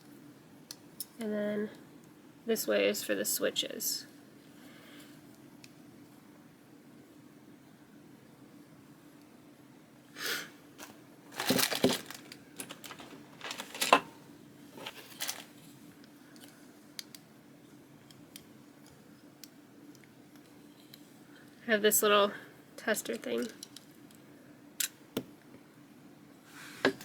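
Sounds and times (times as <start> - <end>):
plastic packaging crinkling: 10.8 - 15.7.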